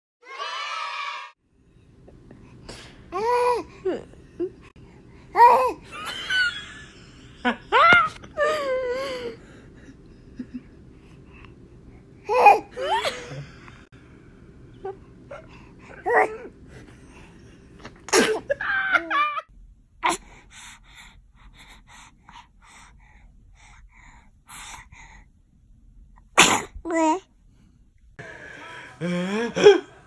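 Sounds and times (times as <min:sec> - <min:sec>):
baby laughing and babbling: 0:03.1 - 0:04.0, 0:05.4 - 0:05.9, 0:12.2 - 0:13.4.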